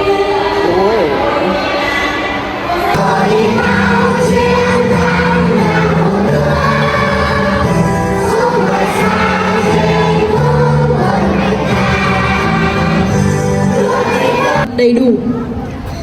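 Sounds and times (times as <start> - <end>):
children singing in chorus: 2.7 - 14.7
music: 2.9 - 16.0.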